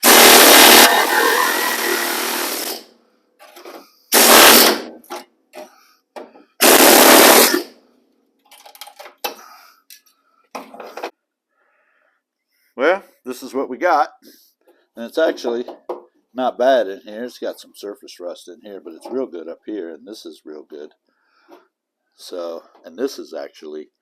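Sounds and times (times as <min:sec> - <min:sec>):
power tool cutting sheet metal: 0:00.0 - 0:02.9, 0:04.2 - 0:04.9, 0:06.6 - 0:07.7.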